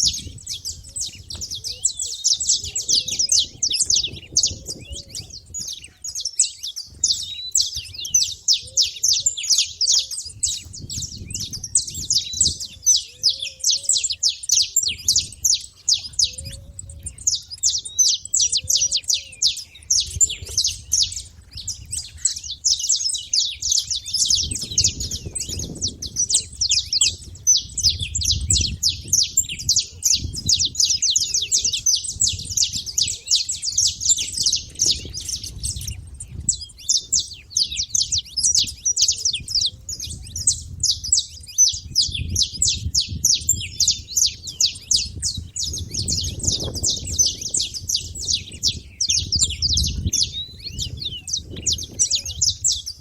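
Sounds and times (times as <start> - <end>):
finches chirping: 0.0 - 53.0.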